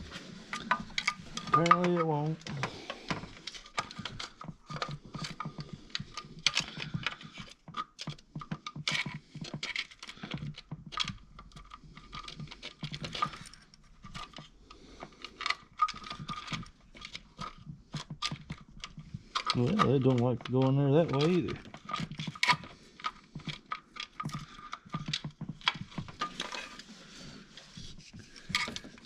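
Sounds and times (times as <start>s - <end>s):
metallic clicking and rattling: 0.5s - 14.5s.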